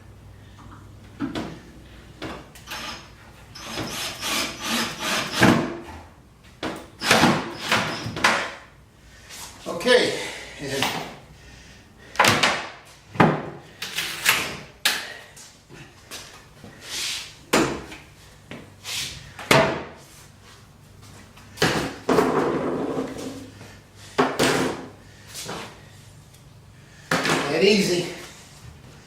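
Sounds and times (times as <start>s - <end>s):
wood rubbing or scraping: 22.2s - 23.5s.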